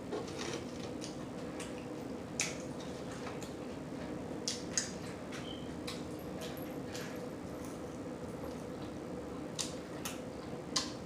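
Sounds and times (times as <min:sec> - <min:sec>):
wet chewing and lip smacks: 0:08.5 - 0:11.0.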